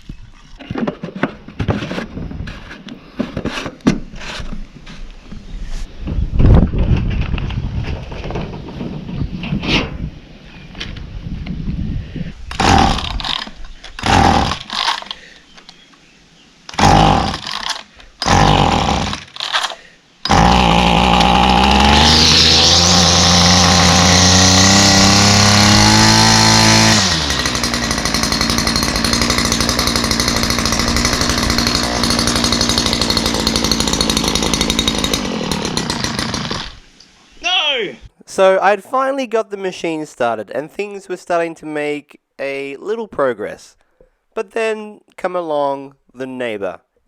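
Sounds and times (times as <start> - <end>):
brush cutter engine running: 12.5 - 15.2, 16.7 - 36.8
brush cutter pull cord bursts: 12.5 - 15.3, 16.7 - 36.8.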